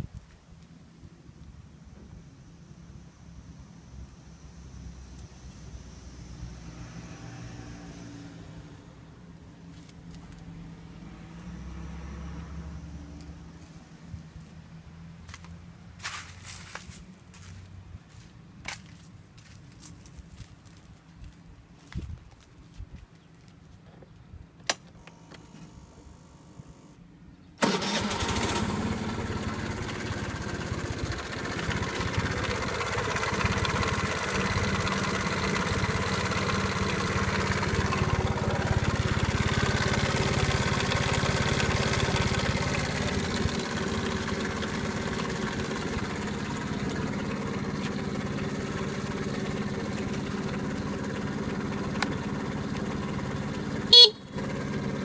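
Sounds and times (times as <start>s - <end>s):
scooter engine starting and idling: 24.7s - 27.0s, 27.6s - 55.0s.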